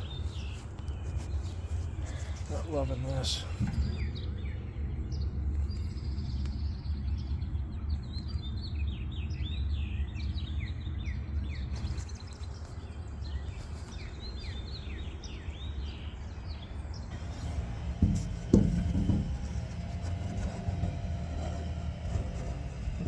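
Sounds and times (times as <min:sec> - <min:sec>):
small birds chirping: 0:00.0 - 0:23.0
steady low rumble: 0:17.0 - 0:23.0.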